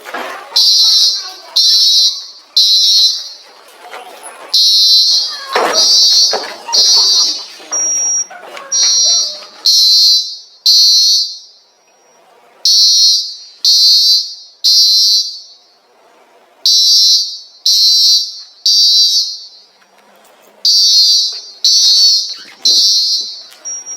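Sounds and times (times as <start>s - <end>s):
fire alarm horn blasts: 0.5s - 3.5s, 4.6s - 12.0s, 12.6s - 15.8s, 16.6s - 19.8s, 20.6s - 23.9s.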